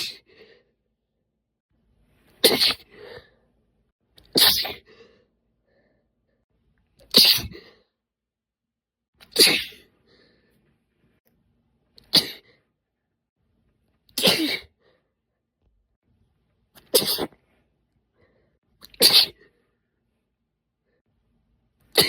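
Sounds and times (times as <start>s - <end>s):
woman sneezing: 2.4s - 2.9s, 4.3s - 4.8s, 7.1s - 7.7s, 9.2s - 9.9s, 12.0s - 12.5s, 14.2s - 14.7s, 16.8s - 17.4s, 18.9s - 19.4s
breath after sneeze: 2.4s - 3.3s, 4.3s - 5.2s, 7.1s - 7.8s, 9.2s - 9.9s, 12.0s - 12.6s, 14.2s - 15.0s, 16.8s - 17.4s, 18.8s - 19.6s.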